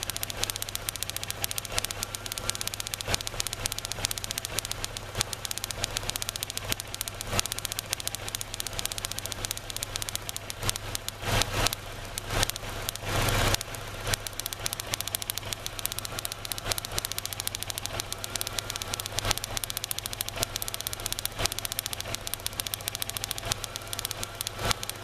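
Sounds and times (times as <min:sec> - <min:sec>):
car engine idling rough: 0:00.0 - 0:25.0
ignition sparks snapping: 0:00.0 - 0:25.0.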